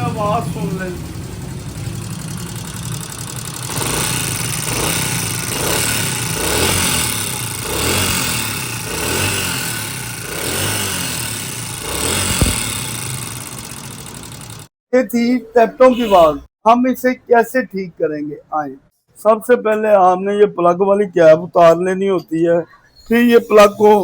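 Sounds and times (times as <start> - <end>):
motorcycle engine running: 0.0 - 14.7.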